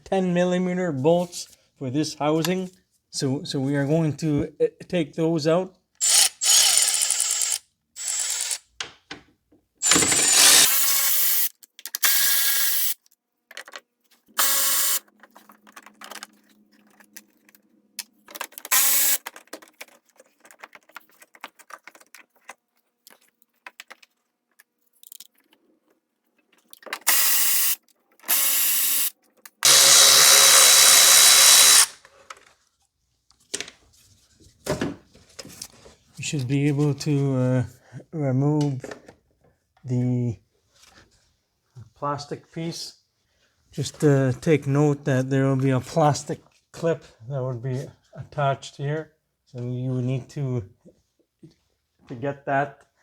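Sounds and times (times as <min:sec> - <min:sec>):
cordless power tool spinning bolts: 0:06.0 - 0:08.7, 0:09.8 - 0:13.0, 0:14.4 - 0:15.0, 0:18.6 - 0:19.4, 0:27.0 - 0:32.0.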